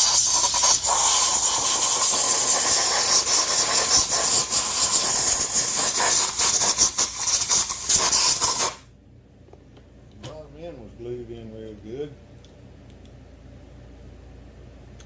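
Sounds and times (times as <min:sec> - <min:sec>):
pressurized air jet hissing: 0:00.0 - 0:08.8.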